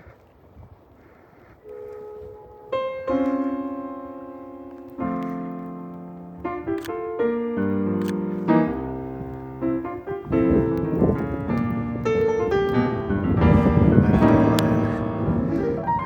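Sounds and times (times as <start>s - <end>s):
jazz piano: 1.7s - 16.0s.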